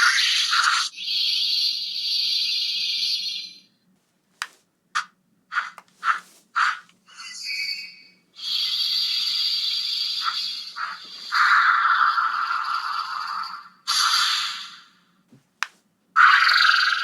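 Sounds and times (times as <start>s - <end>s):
toy electronic sound effects: 16.2s - 17.0s.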